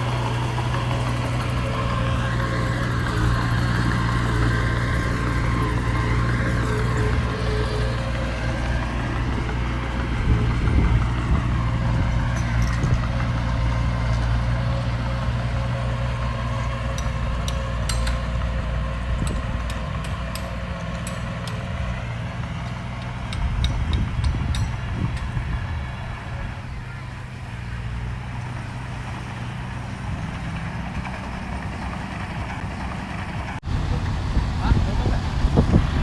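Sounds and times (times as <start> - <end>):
diesel engine running: 0.0 - 36.0
sharp metallic clicks and clanks: 16.9 - 18.4, 19.2 - 21.9.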